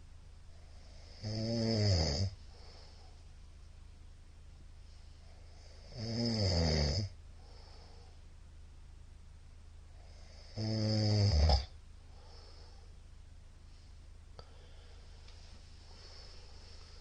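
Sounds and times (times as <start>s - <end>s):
man snoring: 0.8s - 2.8s, 5.4s - 7.2s, 10.0s - 11.8s
soft breath: 2.4s - 3.4s, 7.3s - 8.3s, 12.0s - 17.0s.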